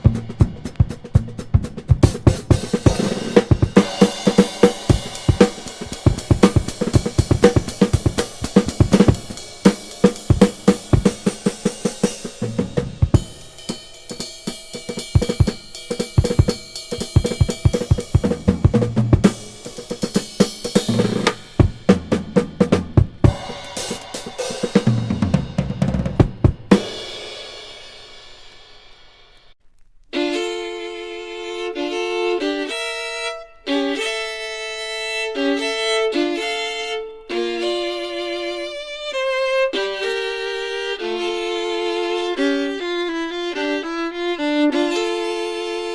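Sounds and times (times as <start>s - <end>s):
violin music from vinyl record: 0.0s - 26.8s, 29.4s - 45.9s
drum kit playing quick beat: 0.0s - 29.5s.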